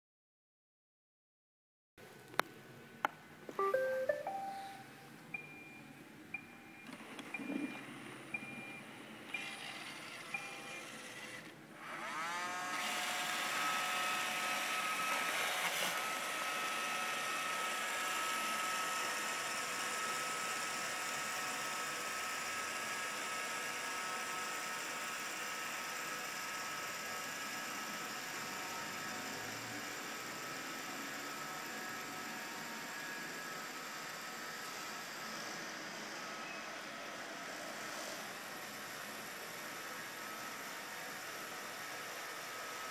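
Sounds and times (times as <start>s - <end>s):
short electronic beeps: 3.6s - 8.8s
robot vacuum motors whirring: 9.2s - 42.8s.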